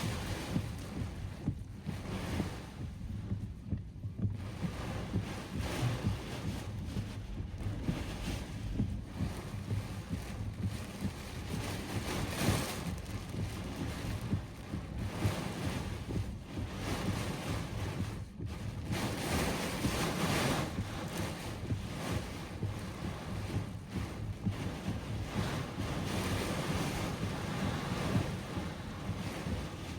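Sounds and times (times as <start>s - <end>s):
heavy rain: 0.0s - 1.3s, 7.6s - 18.0s, 18.6s - 29.9s
wind buffeting microphone: 0.0s - 29.9s.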